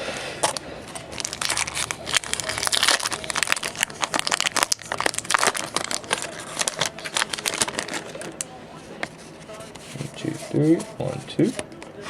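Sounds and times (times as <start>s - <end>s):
foil wrapper crinkling and tearing: 0.9s - 8.5s.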